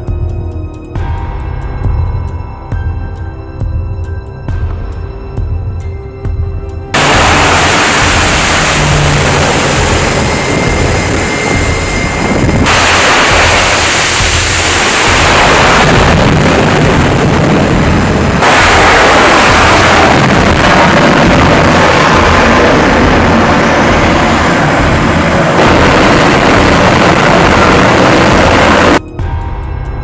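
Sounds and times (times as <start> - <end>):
tense background music: 0.0 - 30.0
loud steady rushing roar: 6.8 - 30.0.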